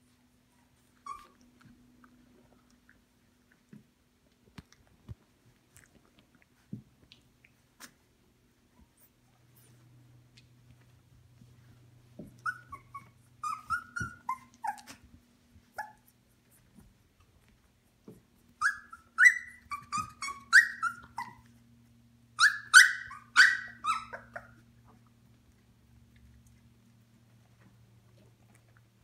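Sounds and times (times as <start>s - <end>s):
faint steady hum: 0.0s - 29.0s
puppies crying: 1.0s - 1.4s, 12.4s - 15.0s, 18.6s - 21.5s, 22.4s - 24.6s.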